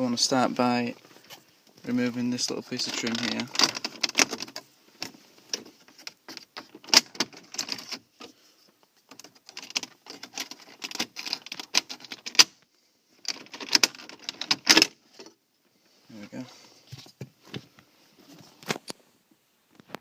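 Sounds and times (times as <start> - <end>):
plastic trim clicking and rattling: 2.8 - 8.0, 9.0 - 12.5, 13.2 - 15.3.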